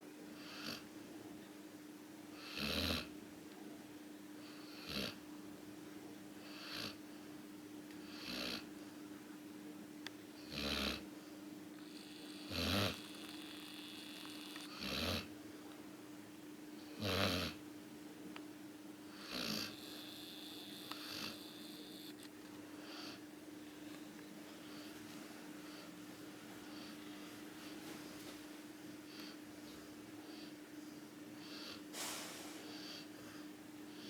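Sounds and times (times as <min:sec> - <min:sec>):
steady low hum: 0:00.0 - 0:34.0
dogs snoring: 0:00.4 - 0:00.9, 0:02.4 - 0:03.1, 0:04.4 - 0:05.2, 0:06.4 - 0:07.0, 0:08.1 - 0:08.7, 0:10.4 - 0:11.1, 0:11.8 - 0:15.3, 0:16.8 - 0:17.6, 0:19.1 - 0:23.2, 0:31.4 - 0:34.0.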